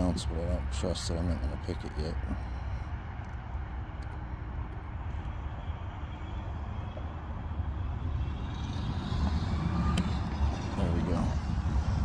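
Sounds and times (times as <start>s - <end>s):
low outdoor rumble: 0.0s - 12.0s.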